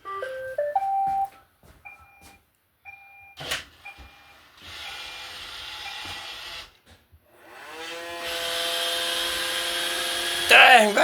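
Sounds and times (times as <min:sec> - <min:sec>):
robot vacuum motor drone: 0:07.4 - 0:10.5.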